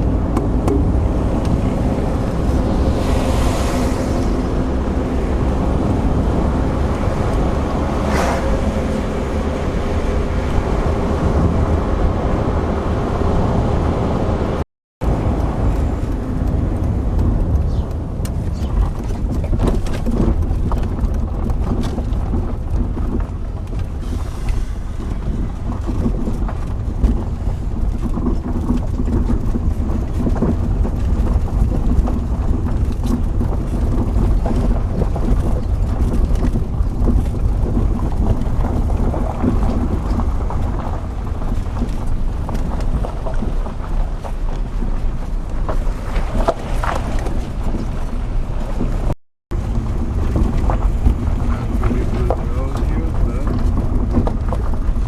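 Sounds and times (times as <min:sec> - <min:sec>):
car engine and road noise: 0:00.0 - 0:55.0
wind on microphone: 0:00.0 - 0:55.0
small knocks and rattles: 0:15.2 - 0:24.0, 0:25.0 - 0:55.0.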